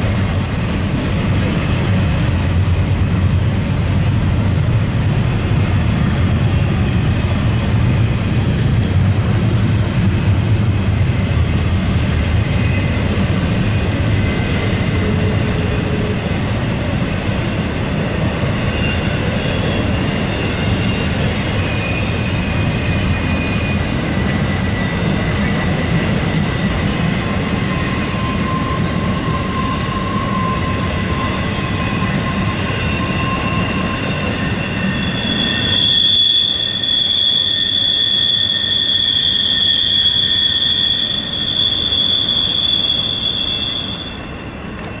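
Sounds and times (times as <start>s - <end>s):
train wheels squealing on rail: 0.0s - 2.5s, 11.8s - 45.0s
freight train rumbling: 0.0s - 45.0s.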